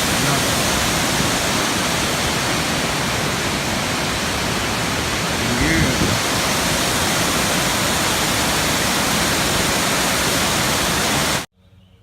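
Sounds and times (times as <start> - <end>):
waterfall rushing: 0.0 - 11.5.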